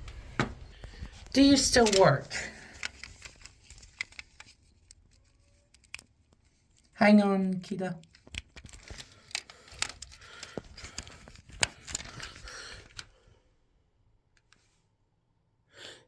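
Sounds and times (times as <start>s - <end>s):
smoke alarm being handled: 0.9s - 13.1s.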